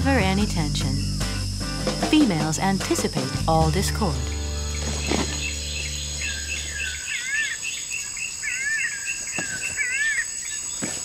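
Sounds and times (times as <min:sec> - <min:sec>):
insects buzzing: 0:00.0 - 0:11.0
bird chirping: 0:02.3 - 0:10.8.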